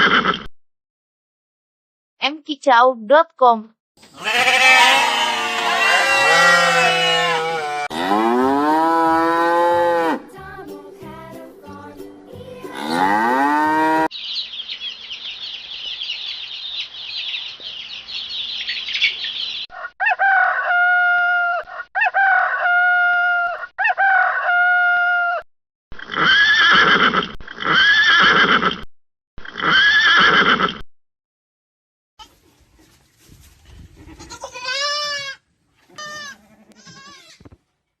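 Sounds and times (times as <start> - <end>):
poultry chirping and calling: 4.0 - 25.4, 32.2 - 37.5.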